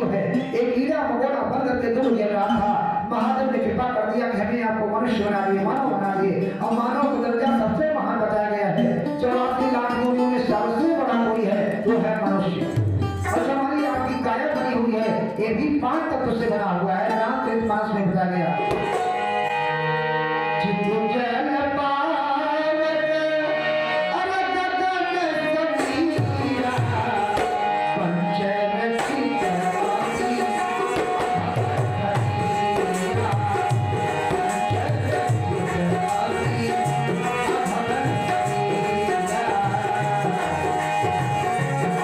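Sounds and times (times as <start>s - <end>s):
tabla drumming: 0.0s - 19.6s, 25.7s - 42.0s
person singing: 5.8s - 17.6s, 20.6s - 42.0s.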